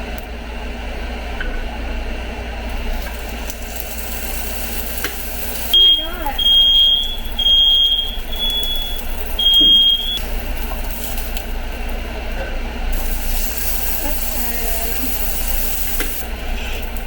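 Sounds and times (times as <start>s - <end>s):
steak sizzling in a pan: 2.7s - 17.0s
smoke alarm beeping: 2.8s - 12.3s, 12.9s - 17.0s.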